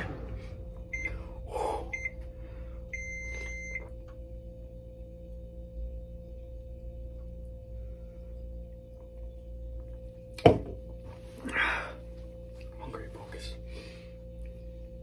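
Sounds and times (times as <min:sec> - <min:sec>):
electronic timer beeping: 0:00.0 - 0:02.2, 0:02.9 - 0:04.0
steady low hum: 0:00.0 - 0:15.0.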